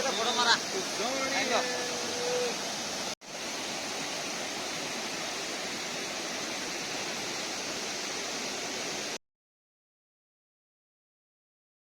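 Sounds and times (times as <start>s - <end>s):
small waterfall rushing: 0.0s - 9.2s.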